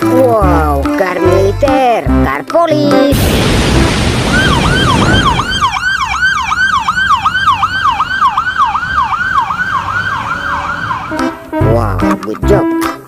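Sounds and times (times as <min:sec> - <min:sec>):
electronic siren yelp: 0:04.2 - 0:11.7.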